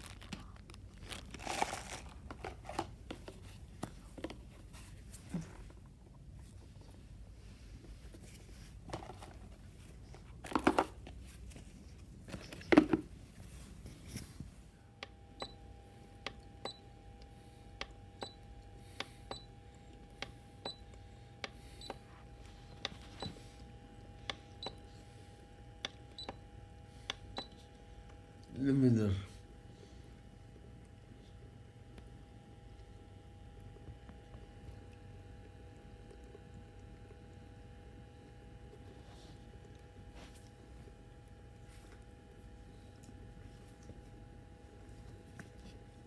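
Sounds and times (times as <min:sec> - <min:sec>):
plastic diffuser being handled: 0:00.0 - 0:07.2, 0:07.8 - 0:14.5
faint steady hum: 0:00.0 - 0:46.0.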